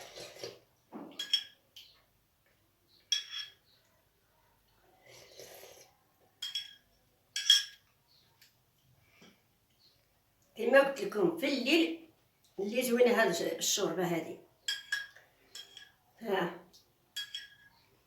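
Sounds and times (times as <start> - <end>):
dishware clinking: 1.0 - 1.6, 3.1 - 3.6, 6.4 - 7.8, 14.7 - 16.0, 17.2 - 17.8
soft breathy sips: 4.9 - 6.0.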